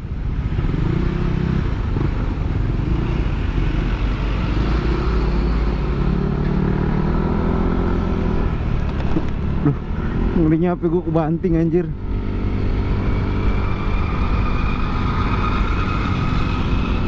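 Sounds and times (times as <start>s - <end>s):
scooter engine at full throttle: 0.2s - 10.3s.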